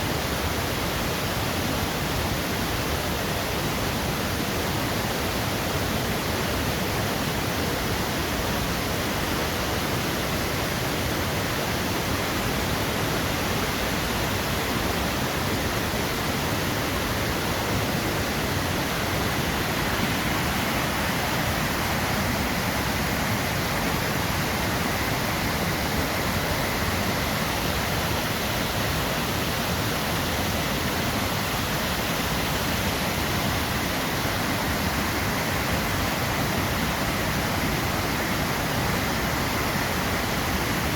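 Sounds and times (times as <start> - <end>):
waterfall roaring over rocks: 0.0 - 40.9.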